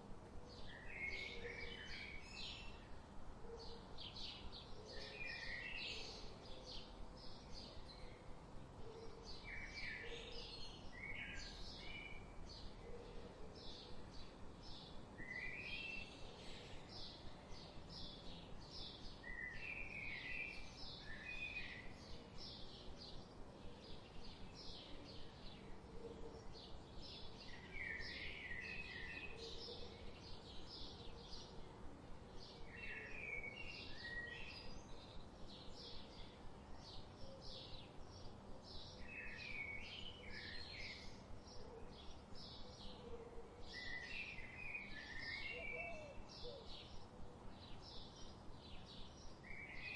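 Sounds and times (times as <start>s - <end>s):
bird warbling song: 32.5s - 49.9s.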